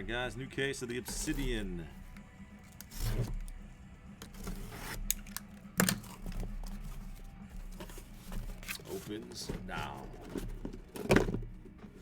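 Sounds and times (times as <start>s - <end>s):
packaging tearing and crinkling: 4.4s - 9.4s.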